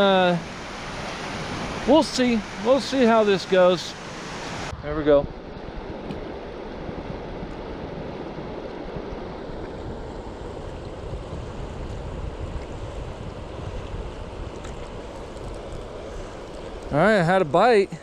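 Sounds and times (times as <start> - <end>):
lake water: 0.0 - 18.0
wind on microphone: 3.9 - 17.2.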